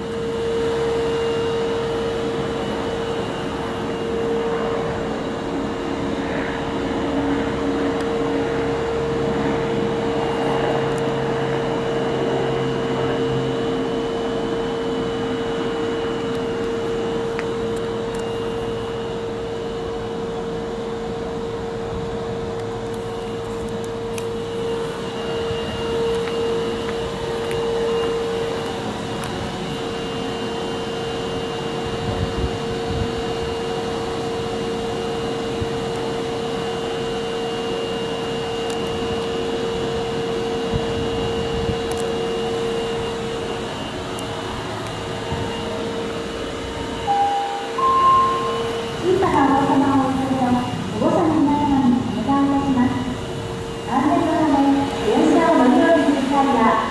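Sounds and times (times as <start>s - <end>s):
constant whine: 0.0s - 56.9s
subway train equipment hum: 0.0s - 56.9s
faint high tone: 47.0s - 50.1s.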